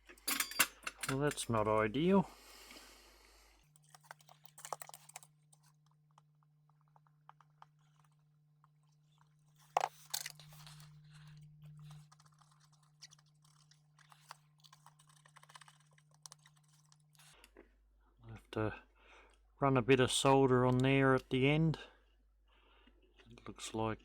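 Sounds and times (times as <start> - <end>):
soldering clicks and crackles: 8.7 - 17.5.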